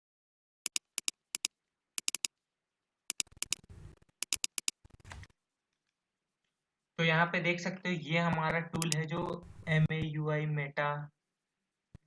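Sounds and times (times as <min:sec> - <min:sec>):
mouse buttons clicking: 0:00.7 - 0:02.3, 0:03.1 - 0:05.3, 0:08.4 - 0:09.3.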